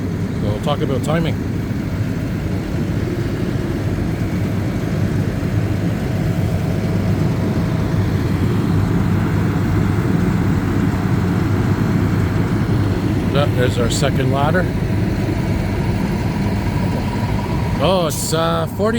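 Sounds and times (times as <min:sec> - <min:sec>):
faint steady whine: 0:00.0 - 0:18.9
diesel engines idling: 0:11.8 - 0:18.9.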